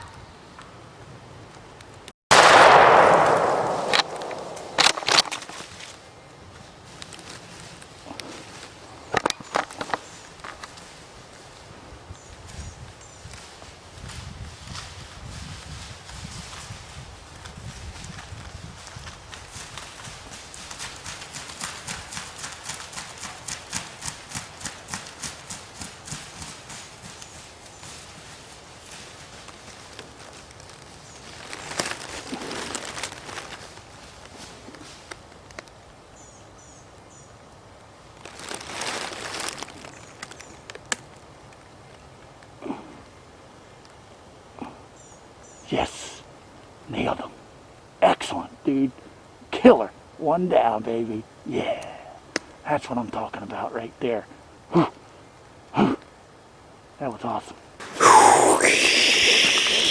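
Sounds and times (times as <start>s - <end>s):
shotgun blast echoing: 2.3s - 5.2s
footsteps crunching through dry leaves: 26.6s - 35.1s, 38.2s - 40.6s.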